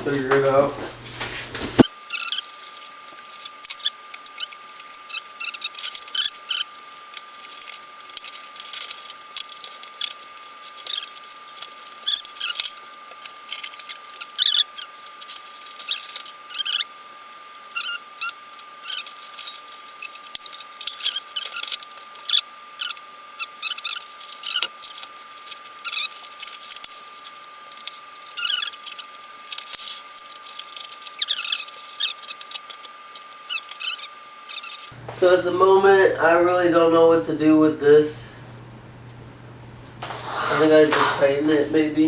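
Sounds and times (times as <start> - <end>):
short high squeaks and clicks: 1.8 - 26.4, 27.2 - 35.0.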